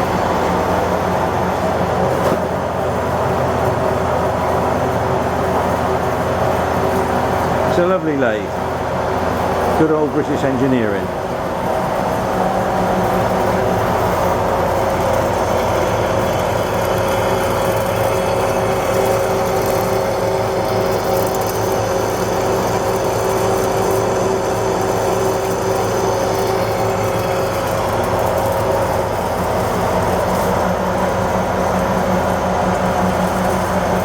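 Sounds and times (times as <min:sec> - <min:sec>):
lathe machine hum with whining: 0:00.0 - 0:34.0.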